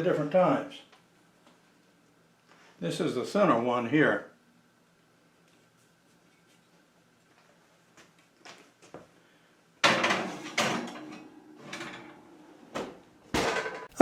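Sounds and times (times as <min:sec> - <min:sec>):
metal pans clattering in oven: 0:09.8 - 0:12.2, 0:13.4 - 0:14.0.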